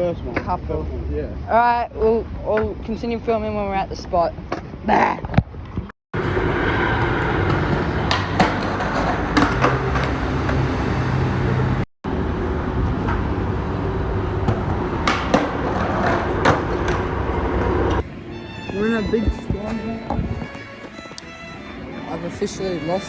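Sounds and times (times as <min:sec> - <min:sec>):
skateboard wheels rolling on pavement: 0:06.2 - 0:18.1.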